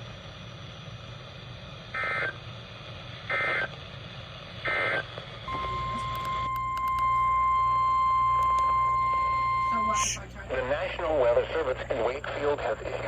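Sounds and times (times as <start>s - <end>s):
warbling digital data tones: 5.5s - 10.3s.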